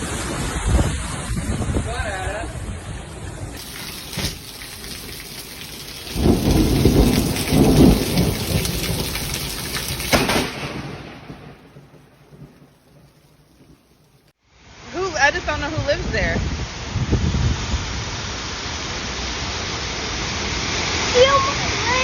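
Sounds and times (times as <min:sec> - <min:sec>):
thunder rumble: 0:00.0 - 0:14.3
heavy rain: 0:00.0 - 0:14.4, 0:17.6 - 0:22.0
thunder crack: 0:03.6 - 0:14.3.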